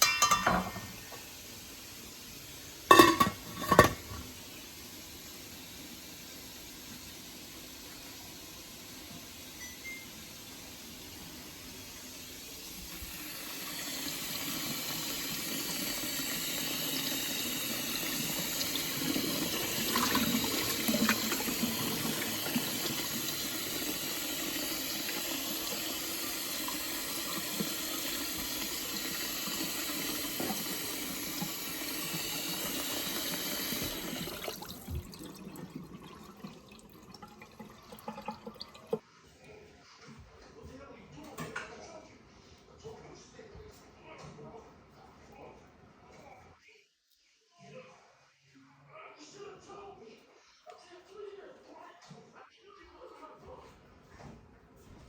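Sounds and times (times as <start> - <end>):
tap water running into sink: 0.0 - 39.0.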